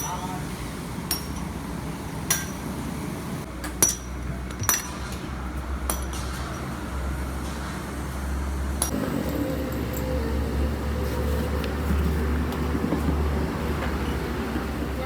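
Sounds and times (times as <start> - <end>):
metallic clinks and knocks: 3.8 - 5.2.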